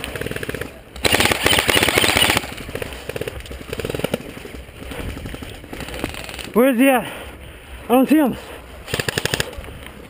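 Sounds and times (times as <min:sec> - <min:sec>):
airsoft rifle rapid fire: 0:00.0 - 0:04.2, 0:05.7 - 0:06.5, 0:08.9 - 0:09.6.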